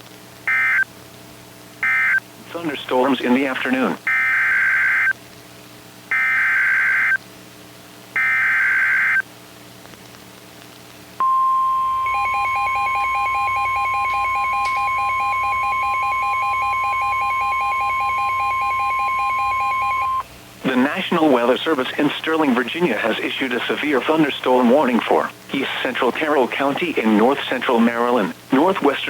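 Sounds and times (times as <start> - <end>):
high warning beep: 0.5 - 0.8, 1.8 - 2.2, 8.2 - 9.2, 11.2 - 20.2
raspy digital data bursts: 8.2 - 9.2.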